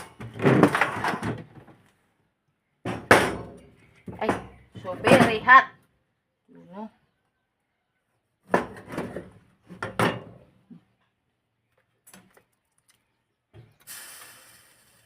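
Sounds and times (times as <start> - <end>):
knocks and clatter of hard objects: 0.0 - 1.8, 2.8 - 5.6, 8.5 - 10.5.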